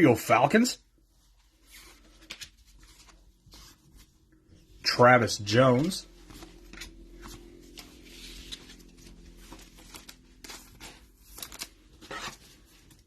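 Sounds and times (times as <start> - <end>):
cards rustling and clicking: 1.7 - 4.1, 6.2 - 13.0.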